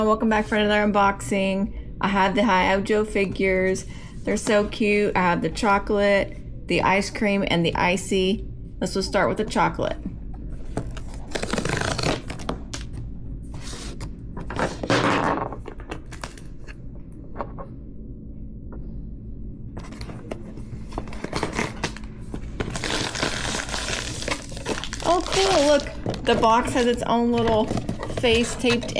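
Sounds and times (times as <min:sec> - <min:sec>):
cardboard packaging tearing: 0:10.9 - 0:12.8, 0:21.0 - 0:28.5.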